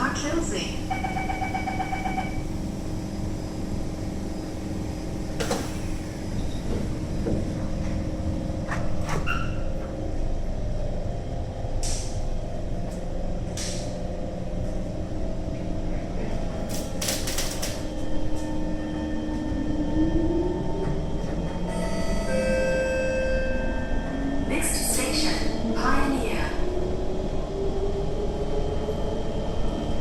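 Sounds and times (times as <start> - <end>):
train rumble: 0.0 - 30.0
train doors shutting: 4.5 - 9.9, 11.7 - 12.3, 12.9 - 14.1, 16.6 - 18.6.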